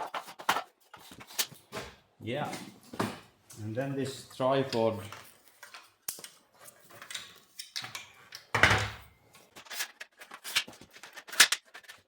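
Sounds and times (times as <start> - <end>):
clunk and scrape: 0.0 - 2.0.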